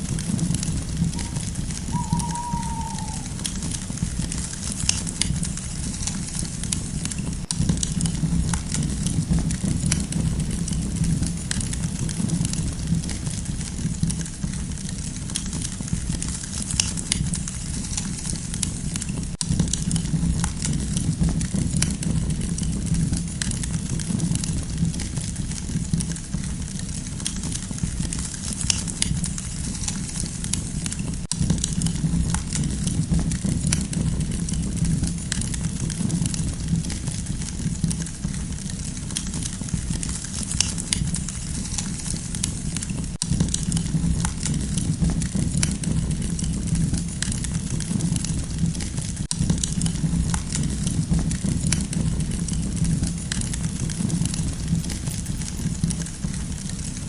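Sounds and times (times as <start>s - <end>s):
low rush of flame: 0.0s - 14.0s, 49.4s - 57.0s
campfire crackling and popping: 0.0s - 14.2s, 49.3s - 57.0s.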